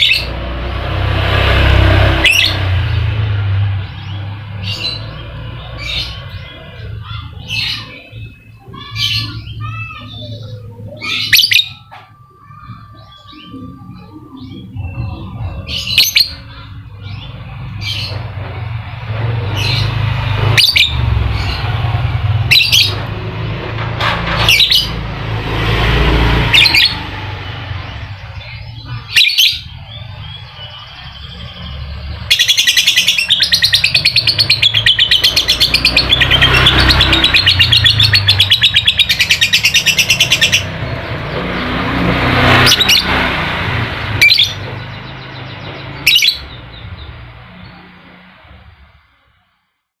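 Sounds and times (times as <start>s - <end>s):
lovebird chirping and trilling: 0.0s - 0.4s, 2.2s - 3.0s, 3.8s - 18.3s, 19.5s - 23.0s, 25.9s - 47.8s
low rumble: 12.1s - 32.3s.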